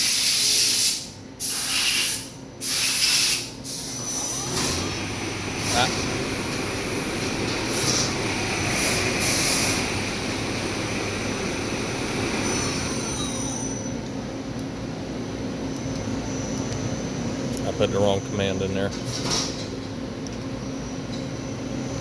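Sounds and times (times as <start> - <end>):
short hissing bursts: 0.0 - 3.9
metal cutting squeal and hiss: 0.0 - 4.6, 8.8 - 9.8, 12.4 - 14.0.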